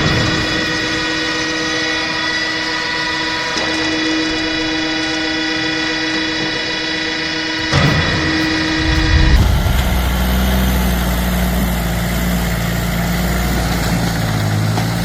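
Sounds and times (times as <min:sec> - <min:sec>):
steady horn-like tone: 0:07.6 - 0:11.1
tractor engine running: 0:07.6 - 0:15.0.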